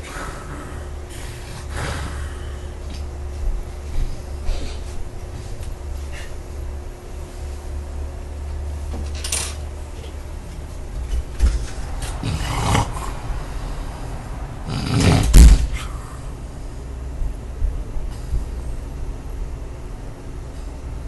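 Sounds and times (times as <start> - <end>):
man snoring: 0.0 - 2.8, 12.0 - 13.7, 14.6 - 16.3.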